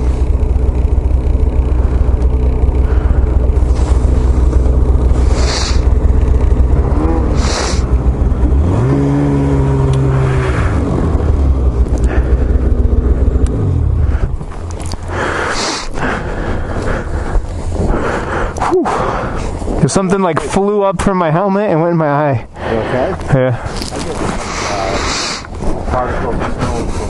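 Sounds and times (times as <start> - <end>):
snowmobile engine running: 0.0 - 27.0
short hissing gusts: 5.2 - 5.9.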